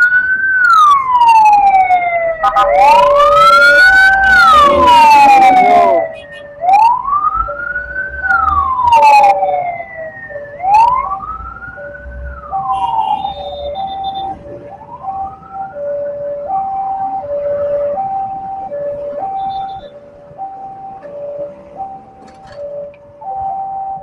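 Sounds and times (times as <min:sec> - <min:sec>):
siren wailing: 0:00.0 - 0:24.0
two-tone level crossing alarm: 0:02.3 - 0:09.6, 0:18.0 - 0:24.0.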